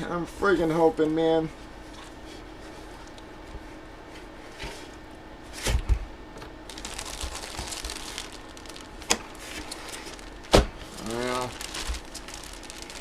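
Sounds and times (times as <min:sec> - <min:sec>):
plastic wrapping crinkling: 0:06.7 - 0:13.0
dull knocks on packaging: 0:10.5 - 0:10.7.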